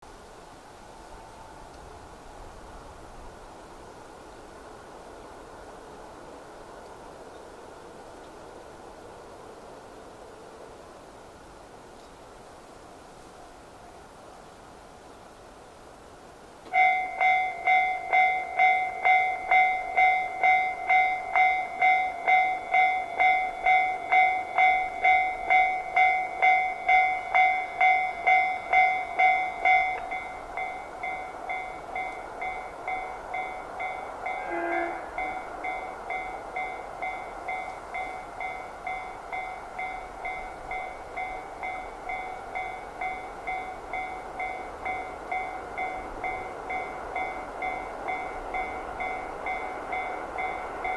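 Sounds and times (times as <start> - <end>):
level crossing alarm ringing: 16.7 - 50.9.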